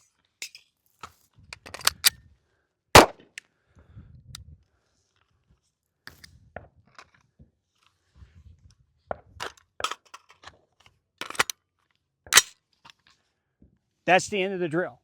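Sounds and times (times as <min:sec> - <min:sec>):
gun handling metallic clicks: 0:01.6 - 0:02.2, 0:11.2 - 0:11.6, 0:12.3 - 0:13.0.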